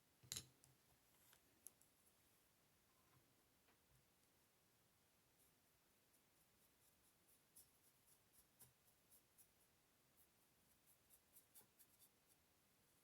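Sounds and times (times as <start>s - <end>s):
brush strokes on paper: 5.4s - 13.0s.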